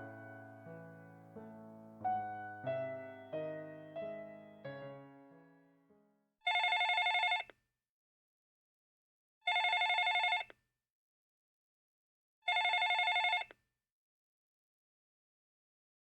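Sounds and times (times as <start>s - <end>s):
warbling electronic telephone ring: 12.5s - 13.5s.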